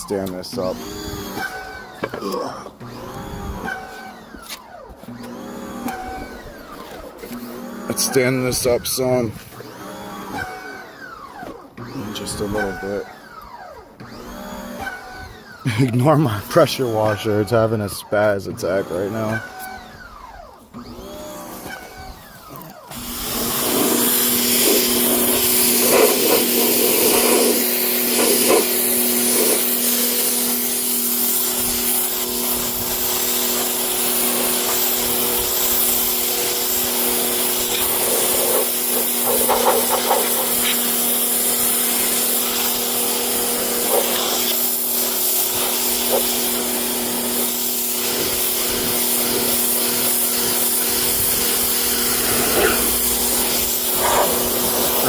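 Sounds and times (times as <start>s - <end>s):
pressure washer pump humming: 0.0s - 55.0s
water spray hissing on fabric: 23.4s - 55.0s.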